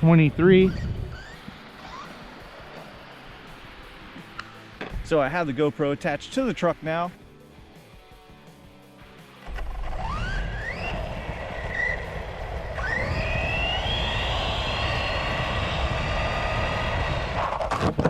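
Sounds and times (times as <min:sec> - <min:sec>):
electric motor whining: 0:00.4 - 0:04.6, 0:09.4 - 0:17.9
low rumble: 0:09.5 - 0:17.6.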